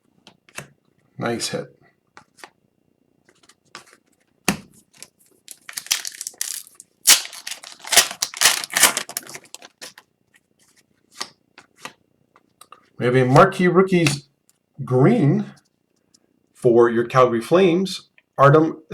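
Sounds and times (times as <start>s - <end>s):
foil wrapper tearing and crinkling: 5.5s - 10.0s.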